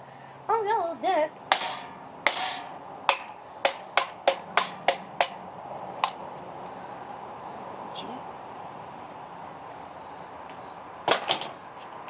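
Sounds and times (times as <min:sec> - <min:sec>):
sharp strikes on metal fan: 0:01.5 - 0:06.2.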